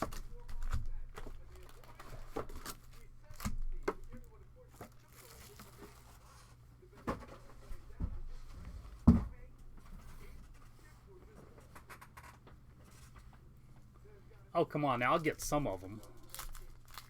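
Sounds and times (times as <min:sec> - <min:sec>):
paper and foil rustling: 0:00.0 - 0:06.6, 0:15.1 - 0:17.0.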